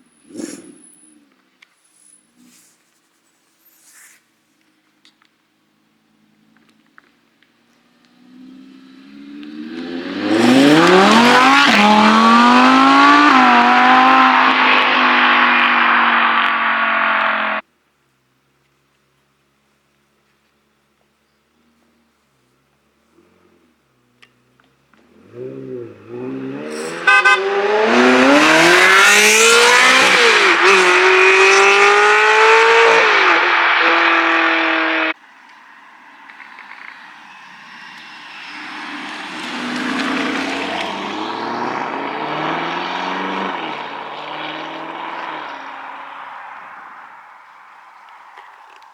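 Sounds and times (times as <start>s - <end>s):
sports car engine accelerating: 7.8s - 17.6s, 23.0s - 35.2s, 36.0s - 48.9s.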